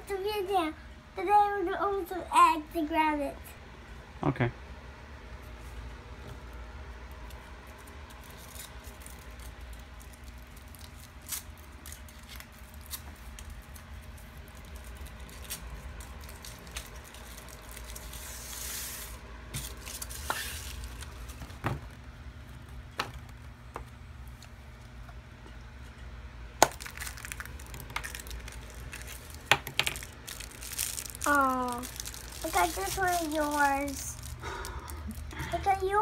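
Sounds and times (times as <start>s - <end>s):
steady low hum: 0.0s - 36.0s
plastic packaging crinkling: 7.3s - 22.0s, 26.6s - 35.8s.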